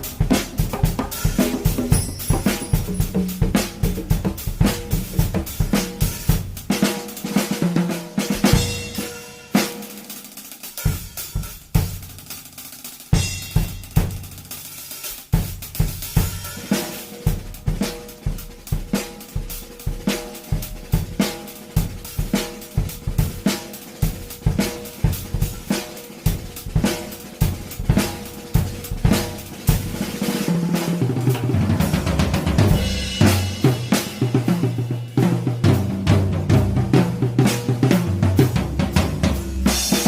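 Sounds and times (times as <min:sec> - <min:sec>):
drum kit beat: 0:00.0 - 0:40.0.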